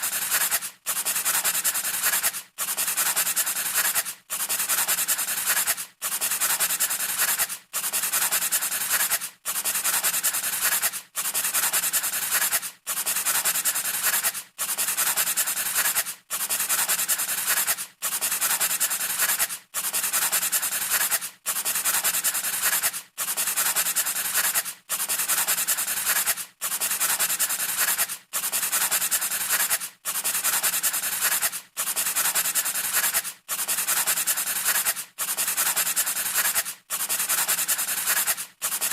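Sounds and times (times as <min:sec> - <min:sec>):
pencil scratching on paper: 0:00.0 - 0:38.9.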